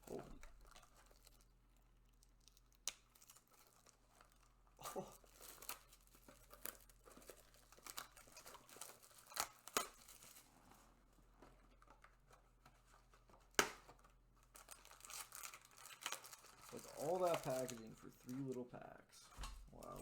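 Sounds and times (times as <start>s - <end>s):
packaging crinkling: 0.0s - 10.8s, 11.7s - 18.6s.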